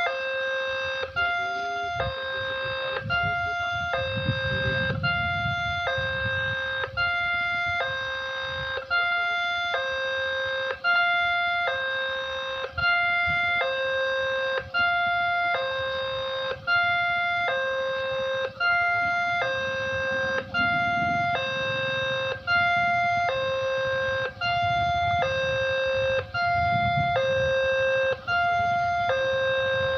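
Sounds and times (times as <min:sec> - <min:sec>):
two-tone crossing warning siren: 0:00.0 - 0:29.9
low rumble: 0:18.8 - 0:27.2.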